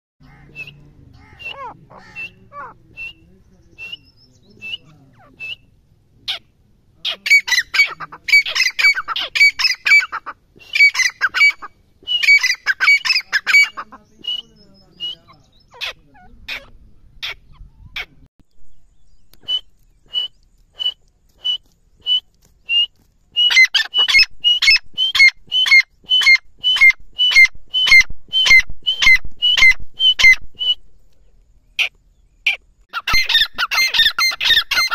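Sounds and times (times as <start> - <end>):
francolin calling: 0.2 - 18.1.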